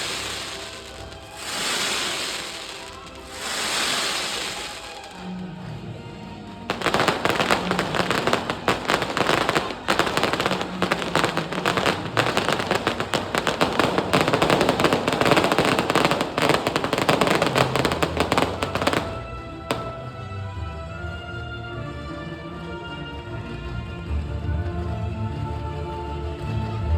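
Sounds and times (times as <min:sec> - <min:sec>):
fireworks crackling: 0:00.0 - 0:05.7, 0:06.6 - 0:20.3
music playing: 0:00.0 - 0:26.9.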